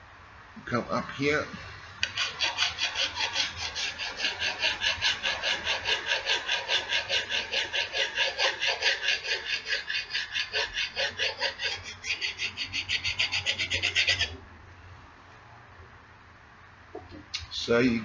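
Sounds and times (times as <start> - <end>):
file rubbing on axe edge: 2.0 - 14.4.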